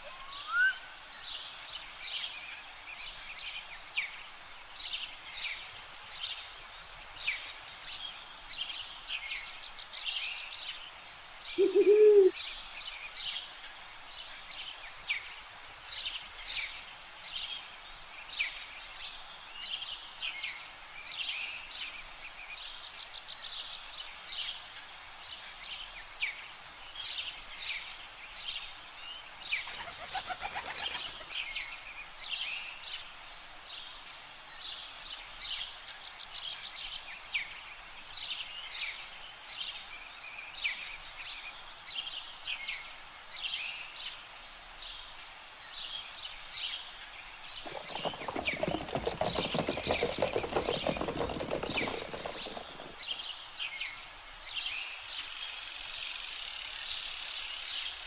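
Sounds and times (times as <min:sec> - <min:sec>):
steady background hiss: 0:00.0 - 0:48.6, 0:52.0 - 0:58.0
birds chirping and calling: 0:29.6 - 0:31.6, 0:47.5 - 0:58.0.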